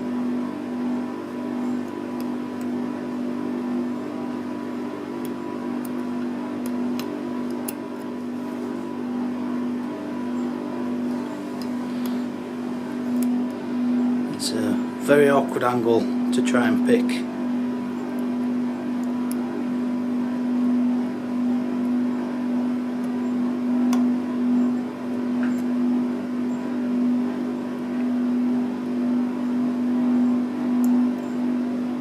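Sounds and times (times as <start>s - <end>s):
low hum: 0.0s - 32.0s.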